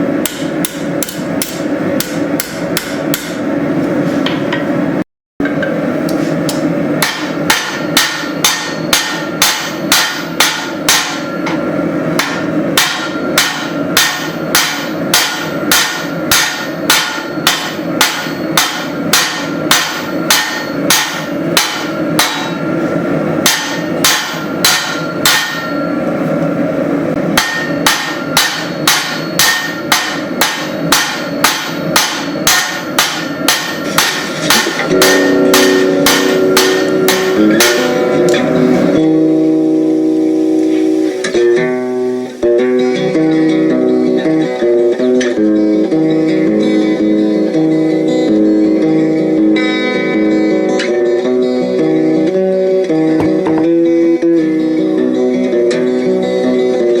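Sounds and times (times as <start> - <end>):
steady background noise: 0.0 - 57.0
hammer ringing on anvil: 7.0 - 22.8, 23.4 - 26.1, 27.4 - 39.0.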